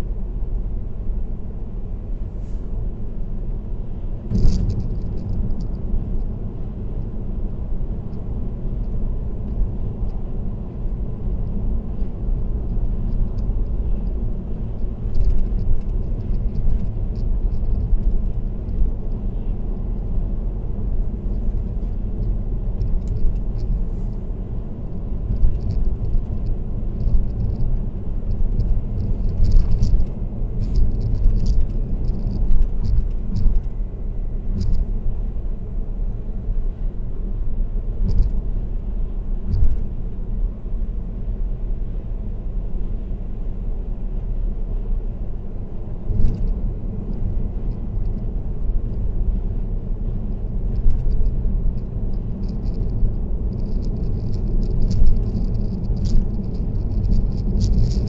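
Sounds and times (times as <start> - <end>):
road and tyre rumble: 0.0 - 58.0
faint ticks and clicks: 25.3 - 33.7, 34.6 - 34.8, 38.0 - 38.4, 46.1 - 48.3, 50.4 - 58.0.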